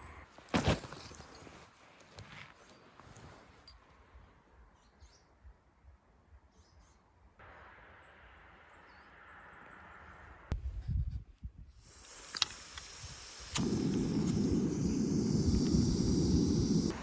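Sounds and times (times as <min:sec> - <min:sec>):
steady hiss: 0:11.8 - 0:17.0.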